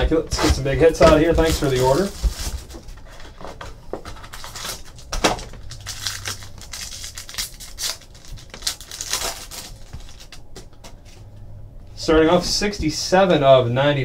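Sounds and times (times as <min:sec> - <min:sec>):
cardboard and plastic rustling: 0:00.0 - 0:11.3.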